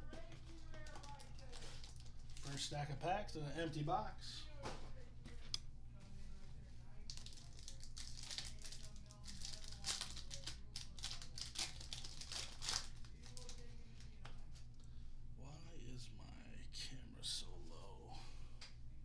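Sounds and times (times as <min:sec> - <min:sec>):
plastic wrappers crinkling and tearing: 0:00.5 - 0:02.7, 0:07.1 - 0:14.0.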